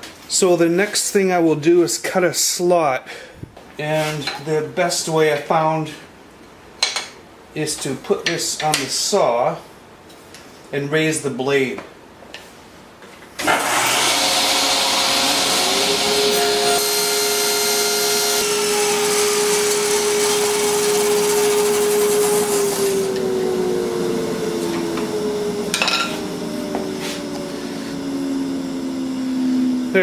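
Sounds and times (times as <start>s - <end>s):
table saw running: 13.4s - 30.0s.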